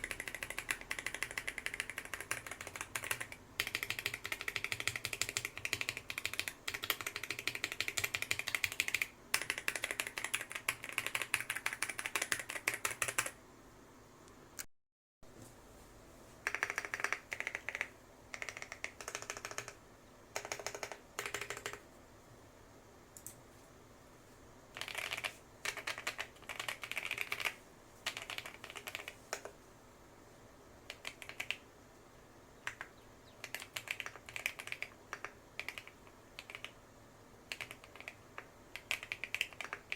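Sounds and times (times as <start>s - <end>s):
mechanical keyboard typing: 0.0s - 13.4s, 16.4s - 21.8s, 24.7s - 29.6s, 30.9s - 31.6s, 32.6s - 36.8s, 37.4s - 39.9s.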